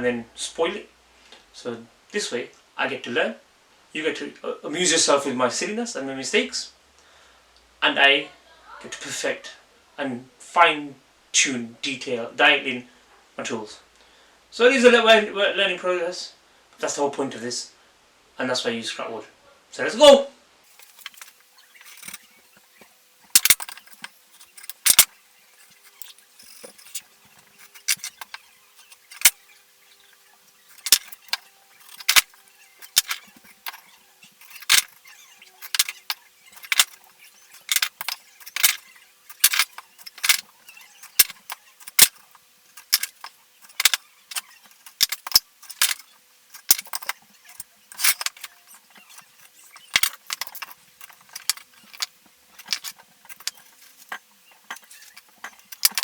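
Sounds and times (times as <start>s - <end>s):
hard objects clacking together: 20.7s - 22.3s, 23.3s - 29.4s, 30.5s - 56.0s.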